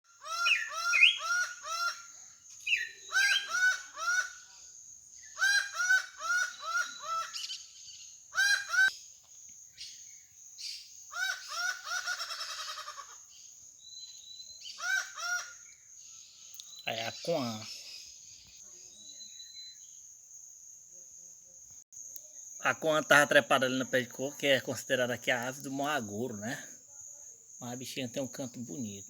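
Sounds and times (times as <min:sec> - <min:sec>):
falcon calling: 0:00.1 - 0:04.5, 0:05.3 - 0:07.7, 0:08.3 - 0:08.9.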